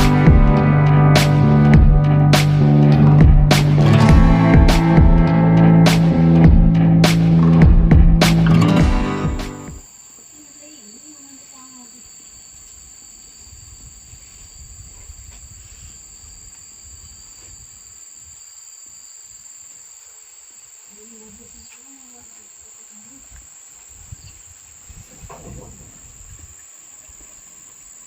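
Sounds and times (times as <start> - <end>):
insects trilling: 9.8 - 28.0.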